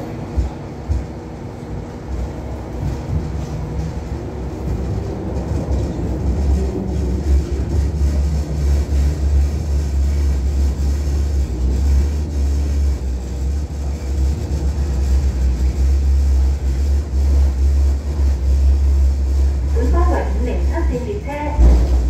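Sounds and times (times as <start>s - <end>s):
light rail rumble: 0.0s - 22.0s.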